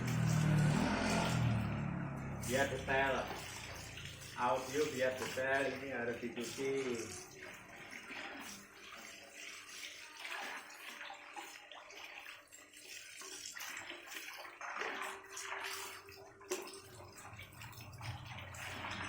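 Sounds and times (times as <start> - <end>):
water running and splashing: 0.0 - 19.0.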